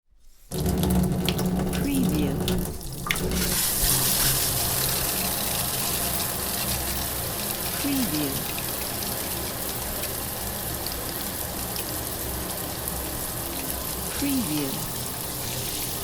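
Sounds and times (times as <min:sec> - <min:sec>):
water dripping: 0:00.5 - 0:16.0
shower spray hissing: 0:03.4 - 0:16.0.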